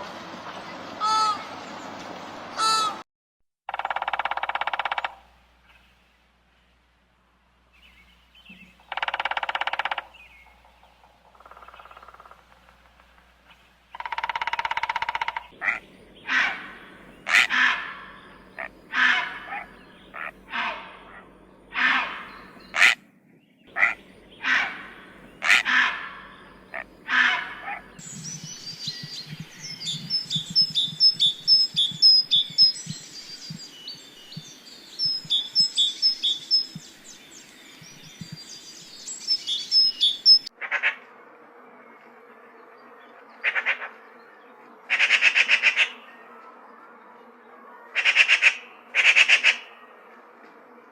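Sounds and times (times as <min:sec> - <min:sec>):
harsh bird calls: 0:00.7 - 0:02.0, 0:02.6 - 0:03.0, 0:13.9 - 0:40.5
short buzzy bird calls: 0:14.0 - 0:23.0, 0:23.7 - 0:37.0, 0:43.4 - 0:44.1, 0:47.9 - 0:49.9
high rapid bird chirping: 0:23.7 - 0:40.5.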